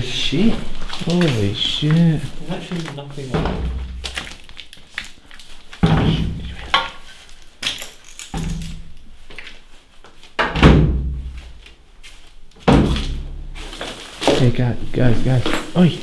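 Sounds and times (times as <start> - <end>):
heavy thuds and knocks: 3.3 - 4.2, 5.8 - 6.9, 10.4 - 11.6, 12.6 - 14.6.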